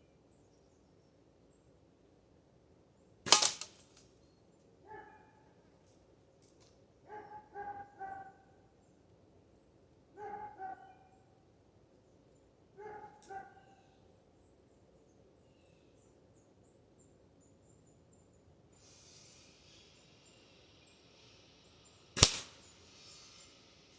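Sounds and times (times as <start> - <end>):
distant dog barking: 4.8 - 5.6, 7.1 - 8.6, 10.2 - 11.3, 12.8 - 13.9.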